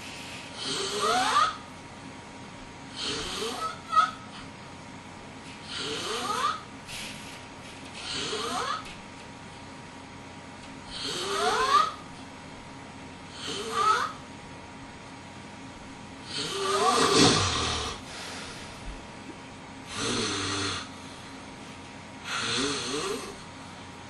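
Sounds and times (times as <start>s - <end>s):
person snoring with squeaky tone: 0.6s - 1.6s, 3.0s - 3.9s, 5.7s - 6.6s, 8.0s - 8.9s, 10.9s - 12.0s, 13.4s - 14.2s, 16.3s - 18.0s, 22.3s - 23.4s.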